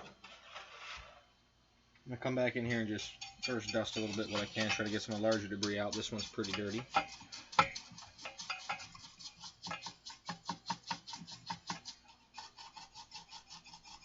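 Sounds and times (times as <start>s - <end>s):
brush ticking and scraping: 2.7s - 14.0s.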